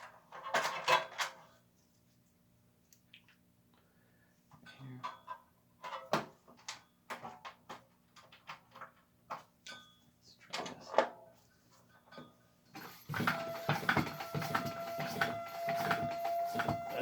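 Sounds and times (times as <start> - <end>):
small air pump humming: 12.8 - 17.0.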